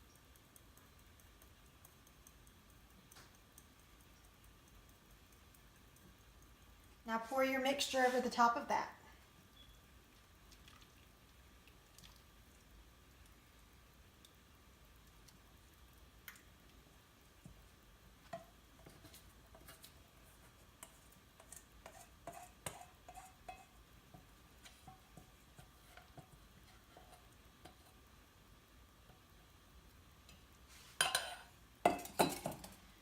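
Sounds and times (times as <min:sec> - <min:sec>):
utensil tapping bowl: 0:00.0 - 0:07.0, 0:31.0 - 0:32.8.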